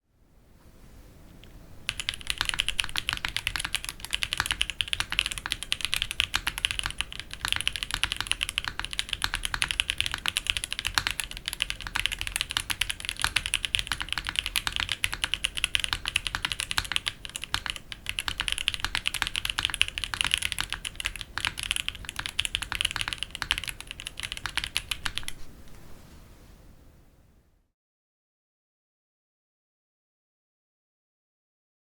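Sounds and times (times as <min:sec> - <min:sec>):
mechanical keyboard typing: 0:01.9 - 0:25.4.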